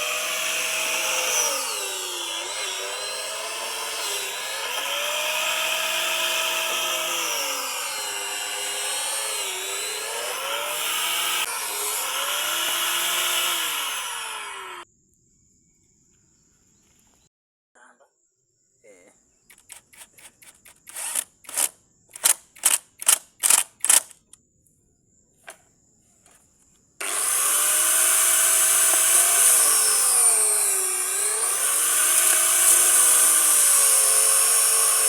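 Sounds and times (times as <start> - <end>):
power tool motor cutting wood: 0.0 - 14.8, 19.5 - 24.4, 27.0 - 35.0.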